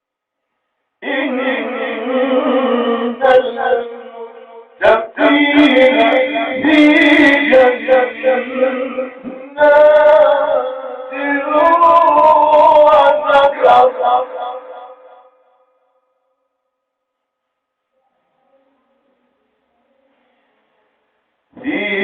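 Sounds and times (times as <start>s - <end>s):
man reciting melodically: 1.0s - 15.4s, 21.5s - 22.0s.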